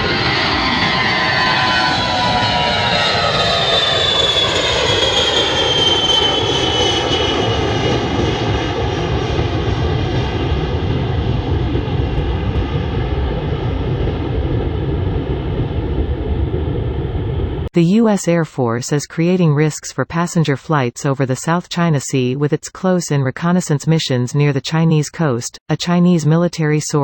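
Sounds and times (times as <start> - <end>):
jet engines passing by: 0.0 - 17.7.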